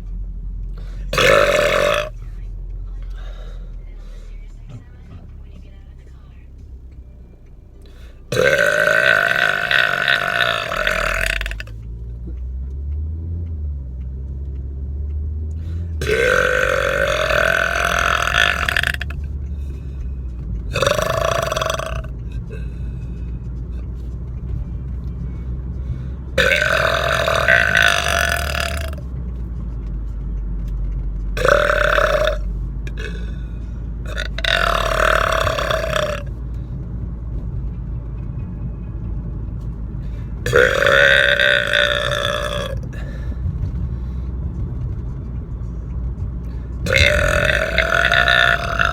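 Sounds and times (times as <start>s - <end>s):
car interior drone: 0.0s - 48.9s
man belching loudly: 1.1s - 2.2s, 8.3s - 11.7s, 16.0s - 19.2s, 20.7s - 22.6s, 26.4s - 29.0s, 31.4s - 33.3s, 34.1s - 36.3s, 40.4s - 43.2s, 46.8s - 48.9s.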